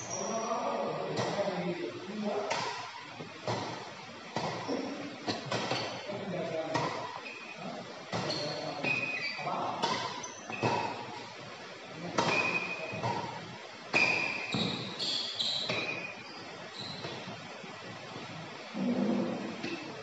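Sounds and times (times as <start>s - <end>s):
shoes squeaking on court floor: 0.0s - 1.4s, 2.7s - 6.2s, 6.8s - 11.2s, 12.2s - 18.4s
racket striking shuttlecock: 2.5s - 6.1s, 9.7s - 11.2s, 12.2s - 16.1s.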